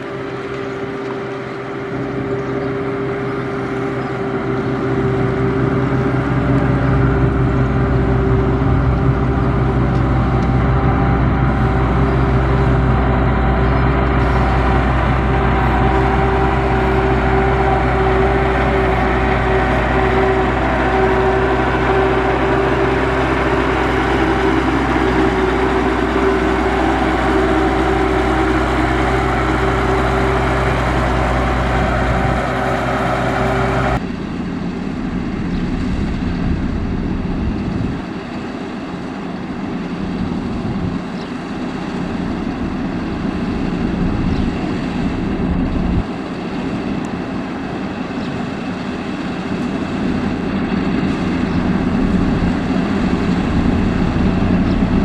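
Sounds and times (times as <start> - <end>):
diesel engine running: 0.0 - 55.0.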